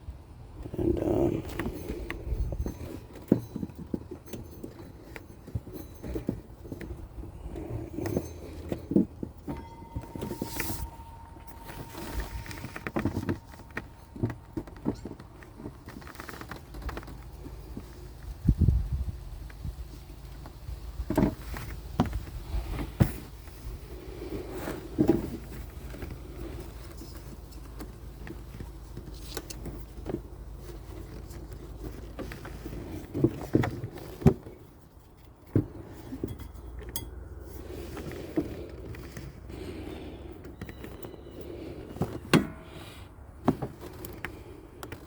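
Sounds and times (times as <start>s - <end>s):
low background hum: 0.0s - 18.4s.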